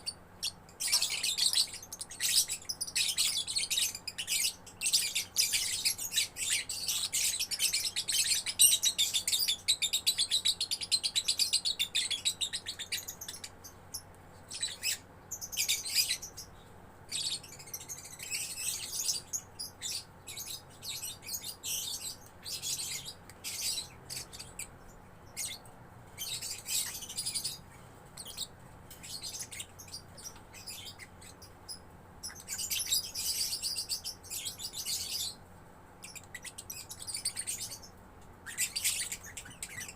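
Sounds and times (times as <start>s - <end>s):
lovebird chattering high chirps: 0.0s - 16.5s, 28.2s - 35.4s, 36.0s - 39.9s.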